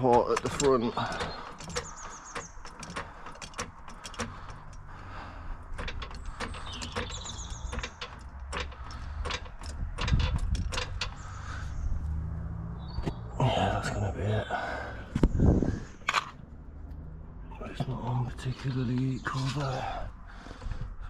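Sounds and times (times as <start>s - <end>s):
short squeaks: 0.0s - 5.0s, 5.8s - 12.3s
jack metallic clicks: 0.0s - 12.2s.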